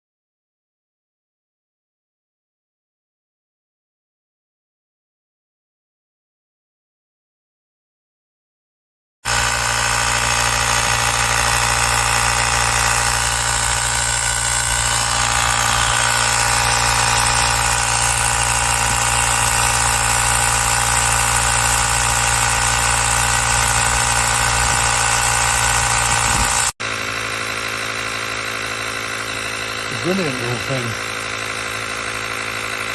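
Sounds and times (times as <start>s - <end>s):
air compressor running: 9.3s - 32.9s.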